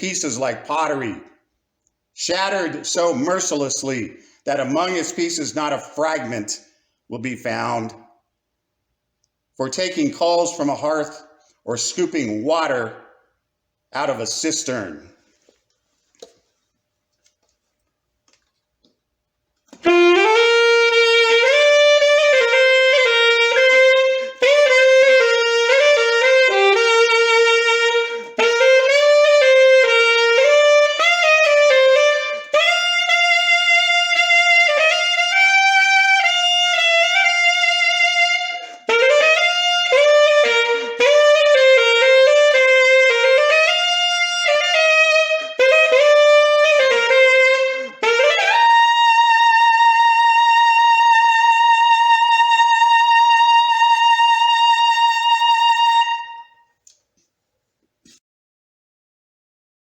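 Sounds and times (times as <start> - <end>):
wind instrument playing hymn: 19.7 - 56.6.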